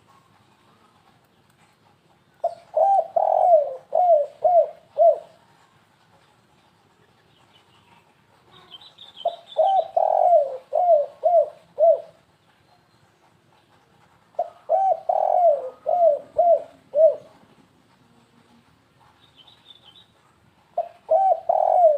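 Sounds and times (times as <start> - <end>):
dove cooing: 2.4 - 5.5, 8.5 - 12.3, 14.3 - 17.5, 20.8 - 21.9
small bird chirps: 7.3 - 10.2, 19.2 - 20.2.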